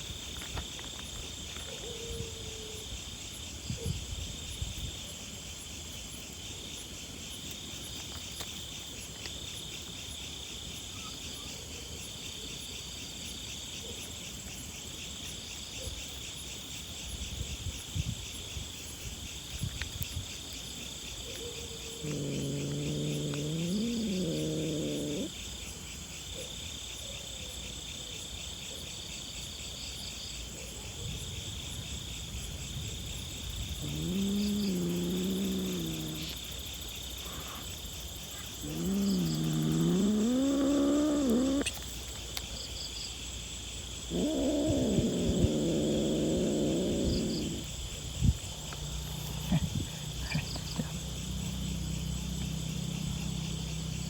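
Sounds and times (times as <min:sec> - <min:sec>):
crickets chirping: 0:00.0 - 0:54.0
cat meowing: 0:38.6 - 0:41.7.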